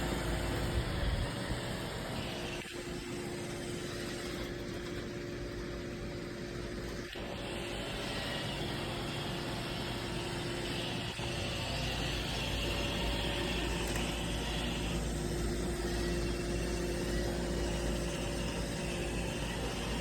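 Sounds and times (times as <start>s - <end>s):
robot vacuum whirring: 0.0s - 20.0s.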